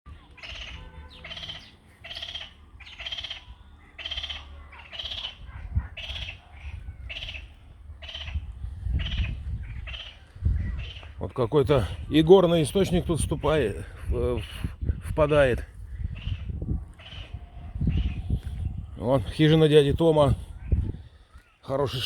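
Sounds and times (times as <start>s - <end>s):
animal rasping call: 0.3s - 8.4s.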